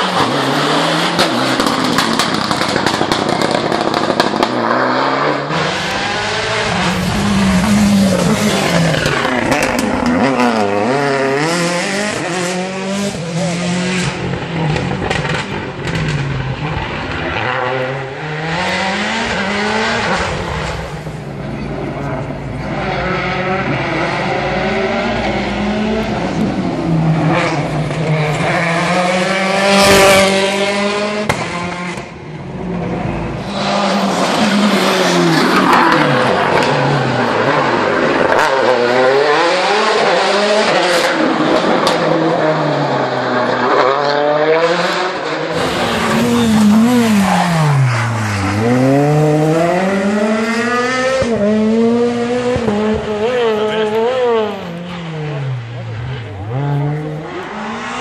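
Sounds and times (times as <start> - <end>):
rally car engines revving: 0.0 - 58.0.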